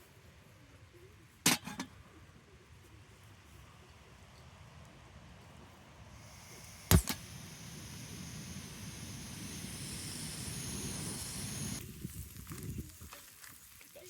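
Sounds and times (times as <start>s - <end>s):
gas stove hissing: 6.1s - 13.1s
sharp clicks: 6.9s - 7.4s.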